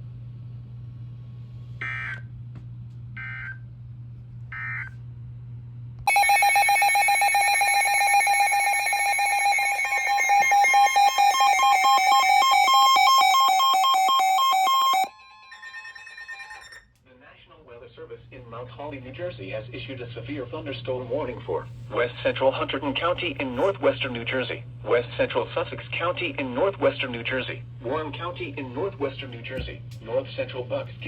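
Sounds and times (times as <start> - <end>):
harsh two-tone attention signal: 6.1 - 16.8
warbling digital data bursts: 6.1 - 16.8.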